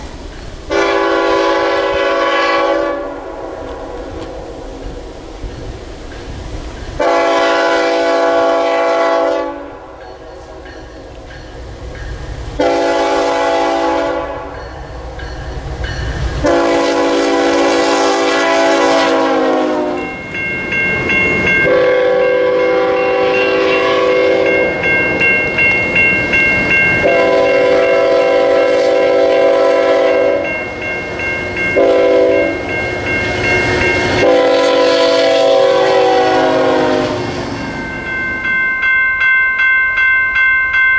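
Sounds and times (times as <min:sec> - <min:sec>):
train rolling by: 0:00.0 - 0:40.9
locomotive air horn blasts: 0:00.7 - 0:04.6, 0:07.0 - 0:09.8, 0:12.6 - 0:14.6, 0:16.4 - 0:20.0, 0:21.6 - 0:24.6, 0:27.0 - 0:30.5, 0:31.8 - 0:32.6, 0:34.2 - 0:37.4.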